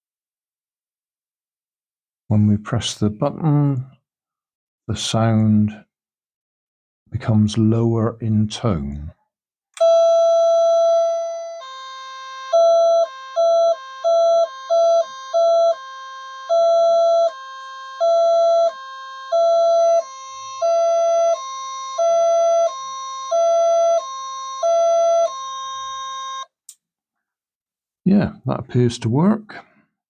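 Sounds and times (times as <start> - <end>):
piercing electronic tone: 12.5 - 26.5.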